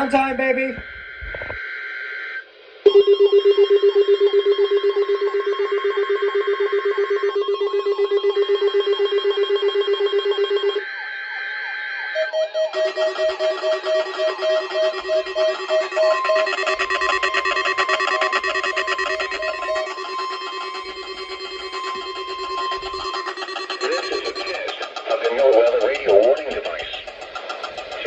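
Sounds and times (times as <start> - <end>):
pulsing alarm beep: 0.0 - 28.0
two-tone high-low alarm: 0.0 - 28.0
warbling alarm sweep: 0.0 - 28.0
buzzing data burst: 12.6 - 28.0.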